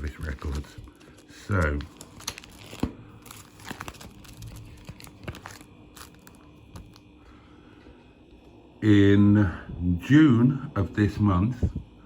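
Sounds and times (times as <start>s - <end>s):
paper rustling and crinkling: 0.0s - 7.0s.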